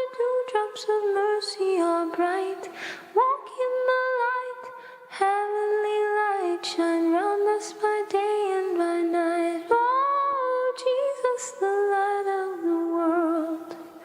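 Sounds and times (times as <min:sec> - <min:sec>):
person breathing: 0:02.7 - 0:03.2, 0:04.7 - 0:05.1.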